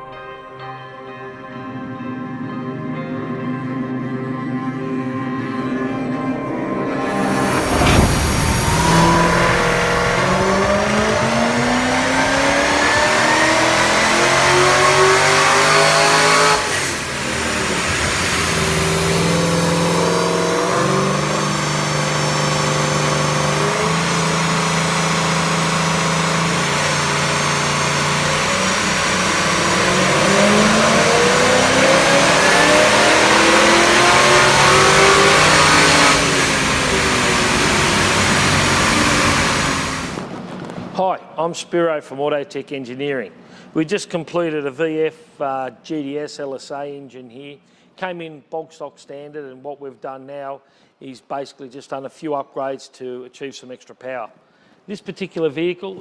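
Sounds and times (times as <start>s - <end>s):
car engine revving: 6.0s - 40.4s.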